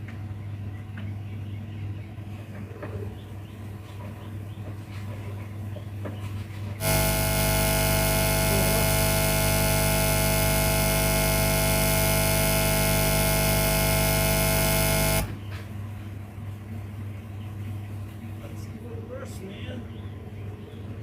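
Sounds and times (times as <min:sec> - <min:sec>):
loud electrical buzz from speakers: 0:06.8 - 0:15.5
faint low hum: 0:06.8 - 0:19.2.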